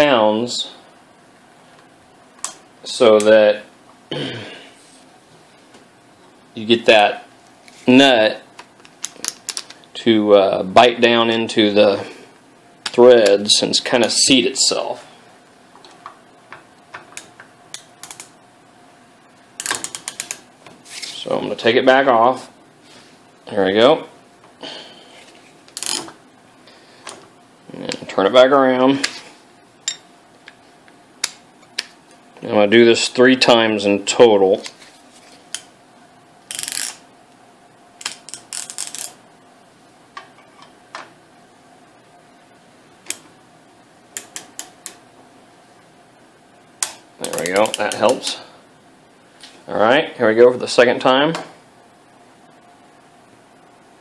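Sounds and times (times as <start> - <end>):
ratchet clicks: 19.6 - 20.4, 36.5 - 37.0, 38.0 - 39.2, 47.2 - 48.2
wrench ratchet clicking: 36.5 - 37.0
metal tools clicking and tapping: 46.8 - 48.2.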